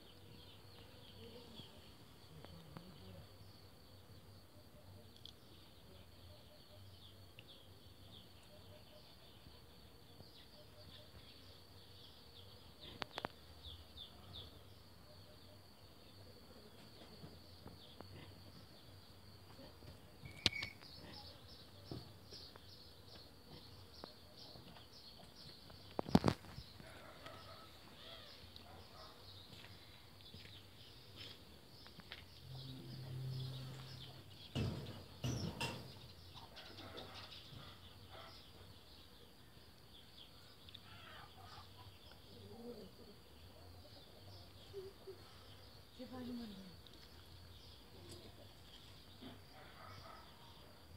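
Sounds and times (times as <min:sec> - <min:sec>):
small birds chirping: 0:00.0 - 0:50.9.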